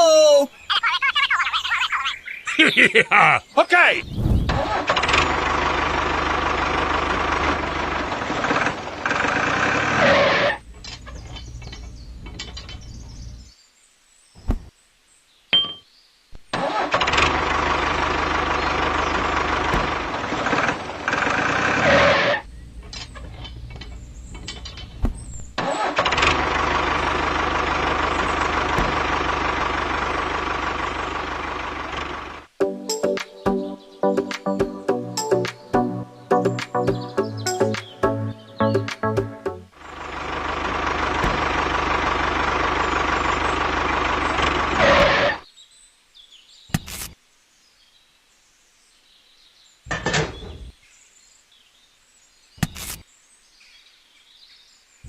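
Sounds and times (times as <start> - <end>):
motor running: 17.1 - 22.3, 26.0 - 32.5, 39.8 - 45.4.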